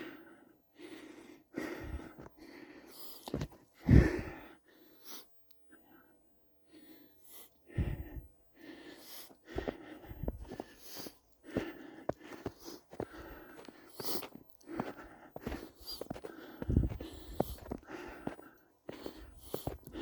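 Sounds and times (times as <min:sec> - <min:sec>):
footsteps crunching in snow: 0:10.4 - 0:20.0.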